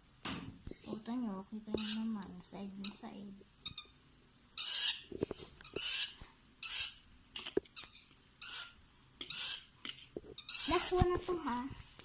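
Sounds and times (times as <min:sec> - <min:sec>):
baby lovebird raspy begging calls: 0:01.8 - 0:02.2, 0:02.8 - 0:04.0, 0:04.6 - 0:07.0, 0:07.8 - 0:09.7, 0:10.4 - 0:10.9.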